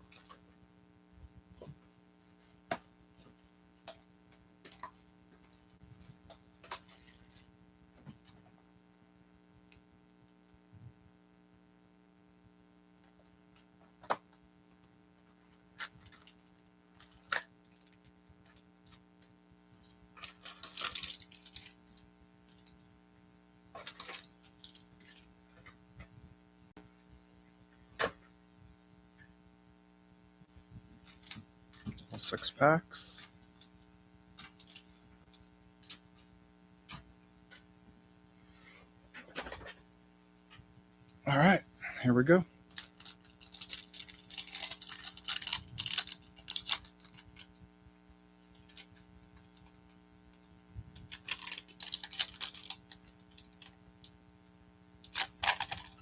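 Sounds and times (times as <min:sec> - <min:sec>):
low electrical hum: 0:00.0 - 0:56.0
cardboard and wrapper crinkling: 0:04.6 - 0:07.5, 0:15.5 - 0:19.2, 0:19.8 - 0:22.8, 0:23.7 - 0:25.8, 0:30.7 - 0:33.7, 0:34.4 - 0:36.3, 0:42.7 - 0:47.6, 0:48.4 - 0:54.2, 0:55.0 - 0:56.0.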